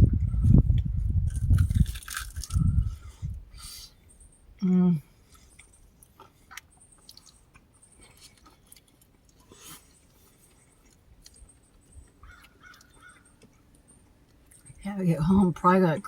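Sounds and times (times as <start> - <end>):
faint chewing: 0.2 - 14.8
crunches of food being eaten: 1.2 - 3.8, 4.6 - 14.8.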